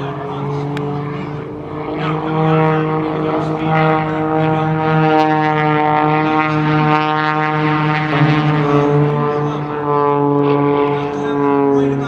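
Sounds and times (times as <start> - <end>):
propeller airplane engine droning: 0.0 - 12.0.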